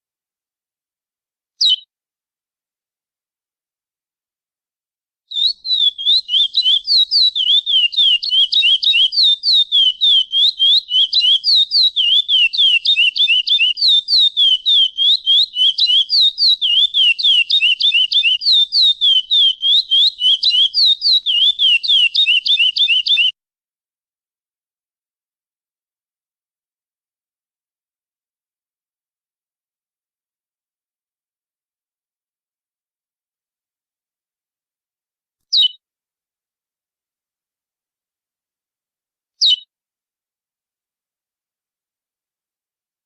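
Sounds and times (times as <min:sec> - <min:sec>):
bird chirping fast downward chirps: 0:05.3 - 0:23.3.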